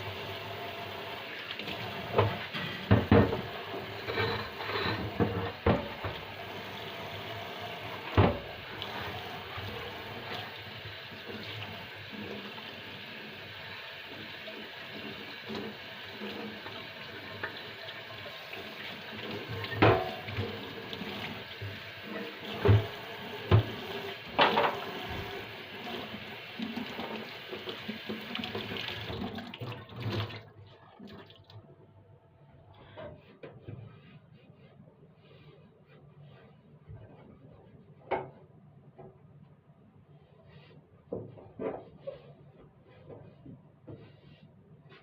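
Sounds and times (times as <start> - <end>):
tap water running into sink: 0.0 - 31.6
items knocking against sink: 2.1 - 6.3, 19.6 - 20.6, 22.5 - 25.4.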